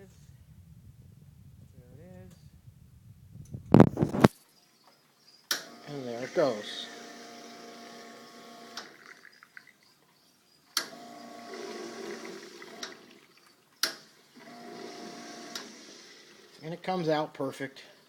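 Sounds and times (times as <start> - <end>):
espresso machine pump humming: 5.7 - 9.4, 10.9 - 13.3, 14.3 - 16.6.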